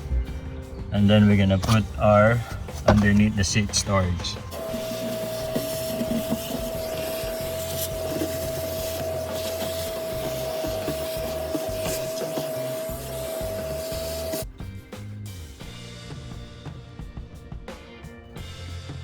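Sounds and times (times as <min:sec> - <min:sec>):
vacuum cleaner running: 0:04.2 - 0:14.4
vacuum nozzle scraping floor: 0:04.5 - 0:14.4.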